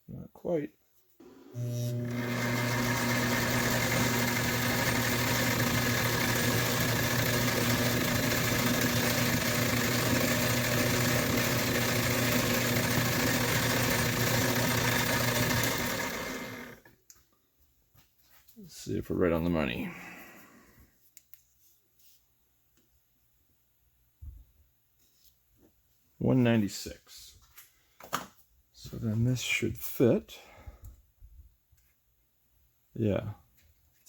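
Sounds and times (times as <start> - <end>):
metal lathe motor hum: 1.2 - 16.9.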